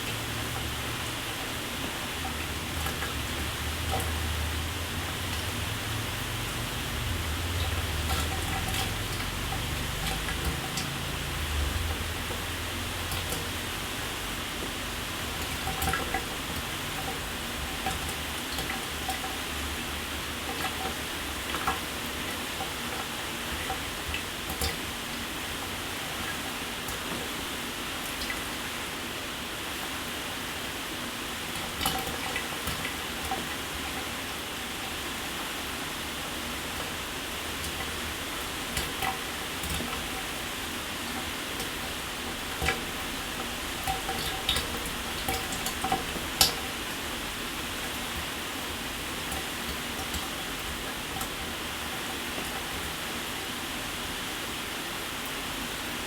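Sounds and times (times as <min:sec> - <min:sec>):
shower water spraying: 0:00.1 - 0:14.4.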